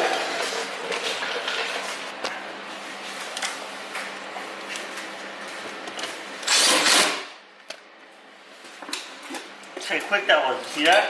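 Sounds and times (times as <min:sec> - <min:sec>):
power tool motor hum: 0:06.4 - 0:07.3.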